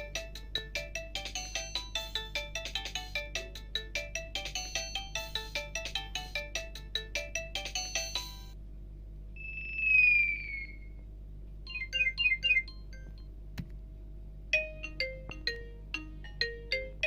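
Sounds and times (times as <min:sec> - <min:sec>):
fast electronic ringtone melody: 0:00.0 - 0:08.6, 0:11.7 - 0:13.2, 0:14.6 - 0:17.0
quick electronic beeps: 0:09.4 - 0:10.8, 0:11.7 - 0:12.7
descending electronic swoop: 0:09.4 - 0:10.9.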